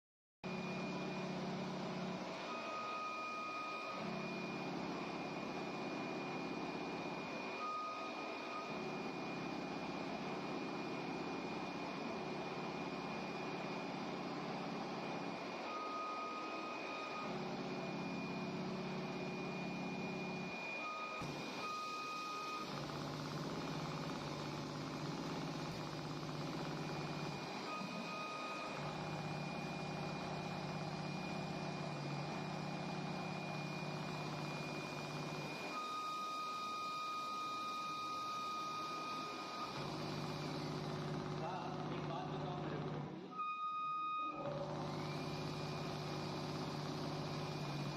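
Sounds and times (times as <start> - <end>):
sewing machine motors humming: 21.2 - 35.7, 39.1 - 43.3, 44.4 - 47.9.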